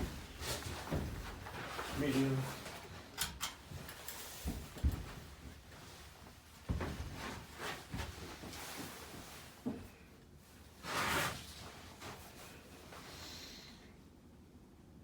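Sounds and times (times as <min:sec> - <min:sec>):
knocks and rustles: 0:00.0 - 0:10.0
ceiling fan running: 0:00.0 - 0:15.0.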